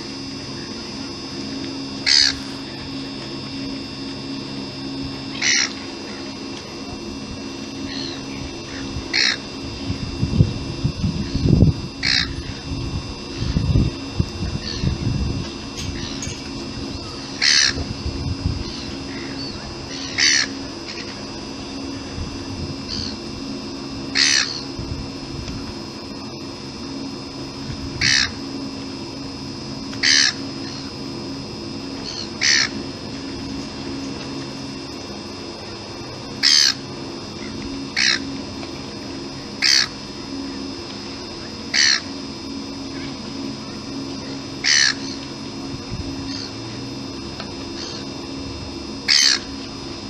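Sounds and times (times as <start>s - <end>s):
low background hum: 0.0s - 50.0s
steady background noise: 0.0s - 50.0s
gull squawking: 2.0s - 2.8s, 5.3s - 6.2s, 7.8s - 9.4s, 12.0s - 12.6s, 17.4s - 17.8s, 18.6s - 21.1s, 24.2s - 24.6s, 28.0s - 28.4s, 30.0s - 30.8s, 32.0s - 32.8s, 36.4s - 36.8s, 37.4s - 38.3s, 39.6s - 40.0s, 41.7s - 42.1s, 44.6s - 45.3s, 47.8s - 48.0s, 49.1s - 49.5s.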